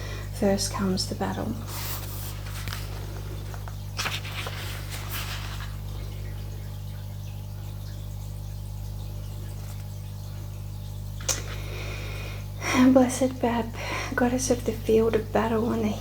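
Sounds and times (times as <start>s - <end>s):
steady low hum: 0.0s - 16.0s
soft rustles: 1.7s - 5.9s.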